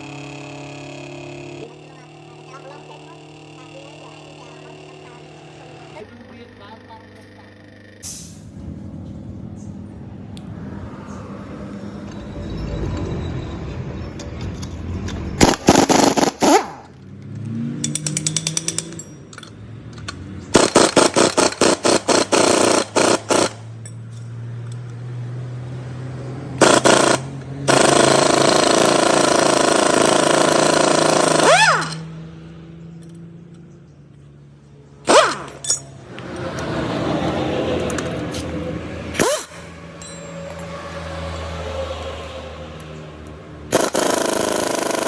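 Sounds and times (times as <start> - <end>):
power tool hammering: 0.0 - 6.1, 14.2 - 25.3, 26.2 - 32.2, 35.0 - 42.2, 42.8 - 45.0
steady low hum: 0.0 - 13.3.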